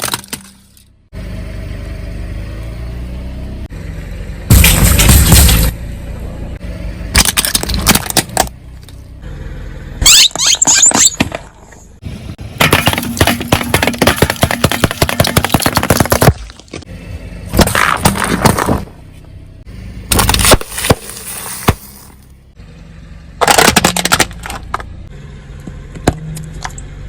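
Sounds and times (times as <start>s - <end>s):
objects crunching under car tyre: 4.5s - 5.7s, 7.1s - 9.0s, 10.1s - 16.9s, 17.5s - 19.3s, 20.0s - 22.4s, 23.4s - 24.9s.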